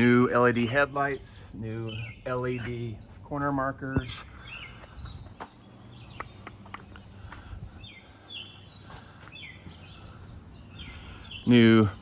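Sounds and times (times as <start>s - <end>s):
birds chirping: 0.0s - 12.0s
sharp clicks: 6.2s - 7.1s.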